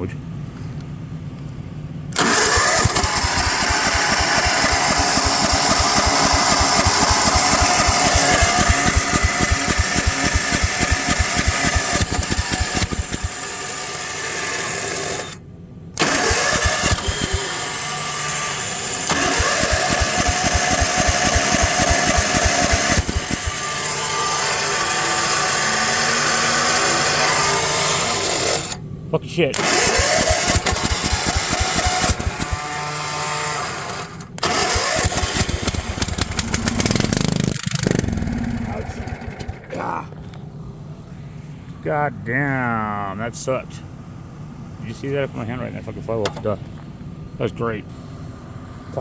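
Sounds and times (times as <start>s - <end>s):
mower engine running: 2.1s - 15.4s, 16.0s - 28.8s, 29.6s - 39.7s.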